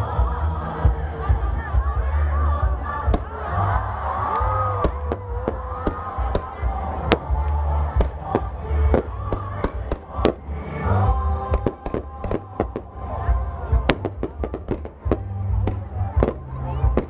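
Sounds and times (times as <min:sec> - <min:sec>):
crowd voices: 0:00.0 - 0:17.0
music: 0:00.0 - 0:17.0
fireworks bangs and pops: 0:04.8 - 0:10.6, 0:11.5 - 0:17.0.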